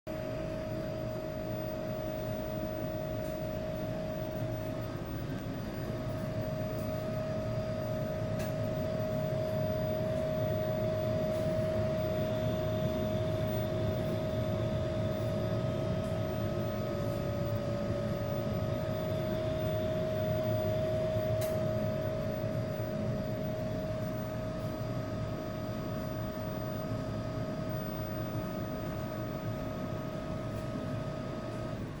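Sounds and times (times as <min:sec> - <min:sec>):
water heater high whine: 0:00.1 - 0:32.0.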